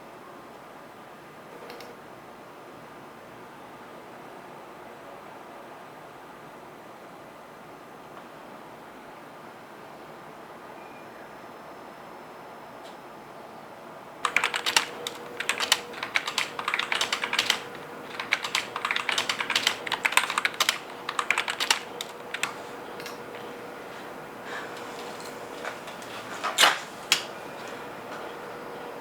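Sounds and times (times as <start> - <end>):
faint steady hum: 10.9 - 29.0
keyboard typing: 14.2 - 27.9.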